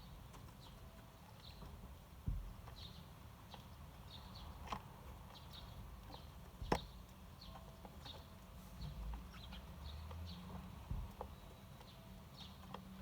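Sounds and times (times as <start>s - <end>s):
sparrows chirping: 0.0s - 13.0s.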